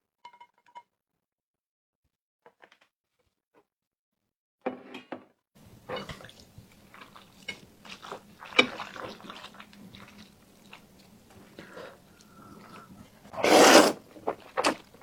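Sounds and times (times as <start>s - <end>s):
biting and wet chewing: 5.8s - 15.0s.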